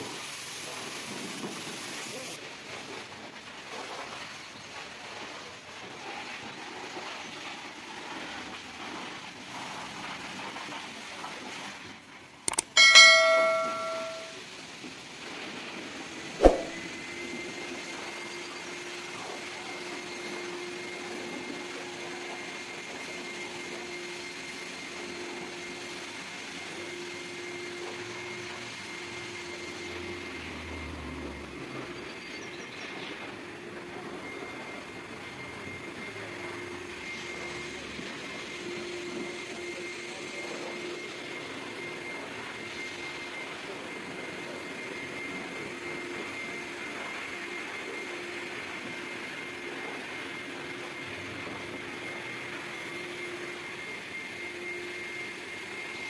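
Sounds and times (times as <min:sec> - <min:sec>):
high whine: 0:12.5 - 0:14.4.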